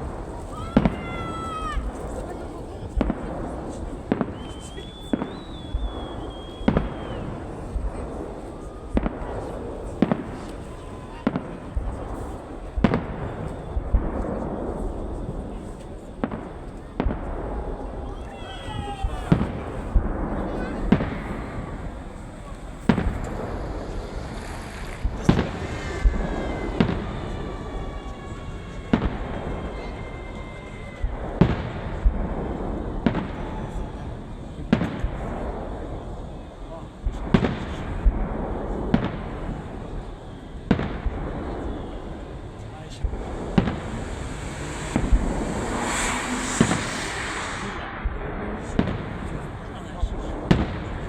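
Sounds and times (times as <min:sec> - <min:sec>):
background rumble: 0:00.0 - 0:18.4, 0:19.0 - 0:51.0
fireworks bangs: 0:00.0 - 0:51.0
fireworks hissing: 0:00.0 - 0:51.0
thin high whistling: 0:04.2 - 0:11.2, 0:41.5 - 0:47.9
steady rumble: 0:41.6 - 0:49.4.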